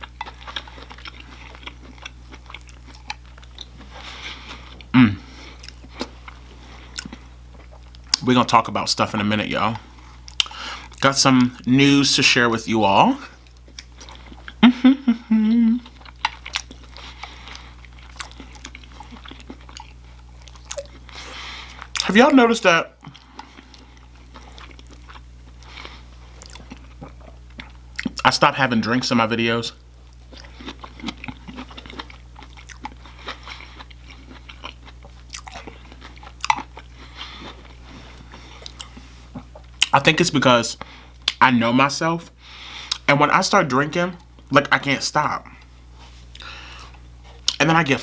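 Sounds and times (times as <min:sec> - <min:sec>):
chewing food: 0:00.0 - 0:08.3, 0:13.3 - 0:14.7, 0:15.8 - 0:22.2, 0:23.0 - 0:28.8, 0:29.8 - 0:40.1
short voiced hum: 0:04.9 - 0:05.3.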